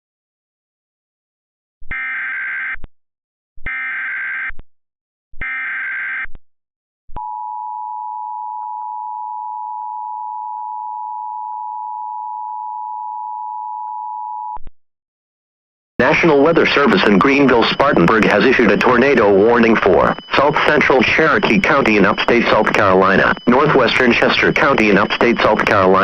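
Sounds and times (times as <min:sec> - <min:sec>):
data header bursts: 0:16.0 - 0:26.0
two-tone attention signal: 0:16.0 - 0:26.0.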